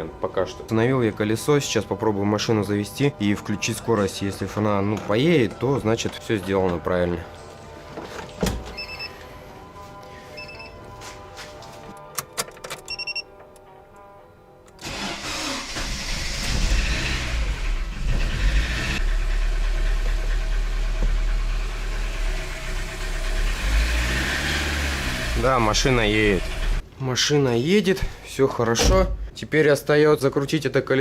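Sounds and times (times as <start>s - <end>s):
background music: 0.0s - 31.0s
car engine cranking and running: 14.8s - 26.8s.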